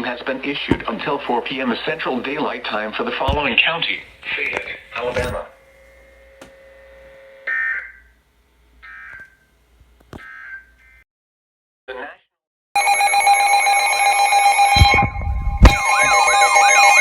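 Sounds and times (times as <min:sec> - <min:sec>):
loud electronic alarm tones: 0:12.8 - 0:17.0.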